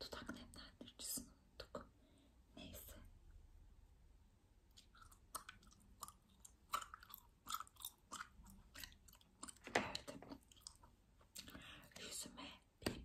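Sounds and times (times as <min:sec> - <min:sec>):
gum chewing clicks: 0:04.7 - 0:11.6.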